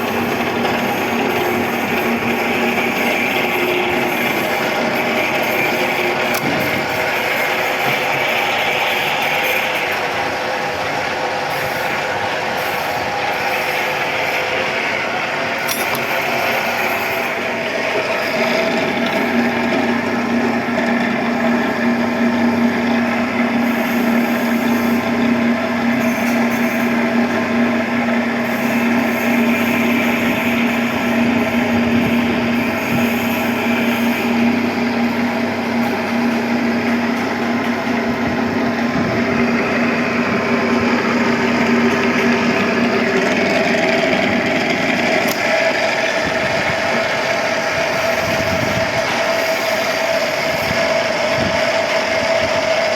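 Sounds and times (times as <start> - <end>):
pipe threading machine motor hum: 0.0 - 52.9.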